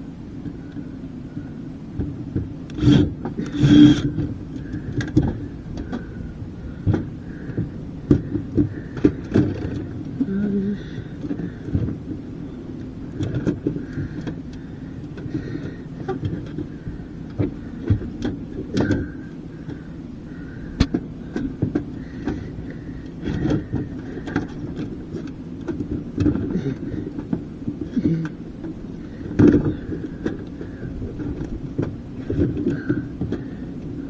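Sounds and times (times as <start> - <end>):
steady low rumble: 0.0 - 34.0.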